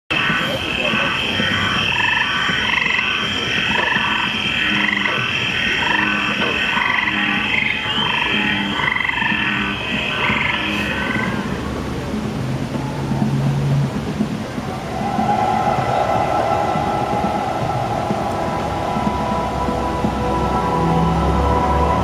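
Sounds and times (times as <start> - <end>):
frogs croaking: 0.1 - 11.9
steady rushing background: 0.1 - 22.0.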